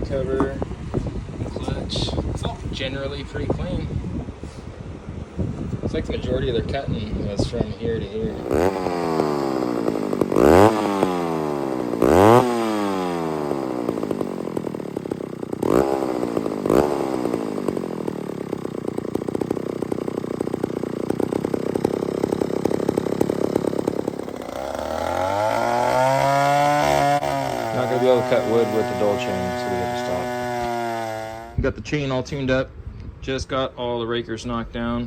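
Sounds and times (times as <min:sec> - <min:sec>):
chainsaw engine revving: 0:08.2 - 0:31.6.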